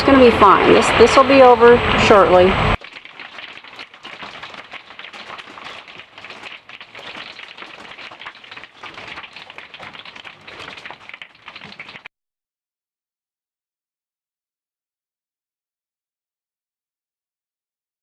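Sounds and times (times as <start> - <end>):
rain and hail on a vehicle roof: 2.8 - 12.1.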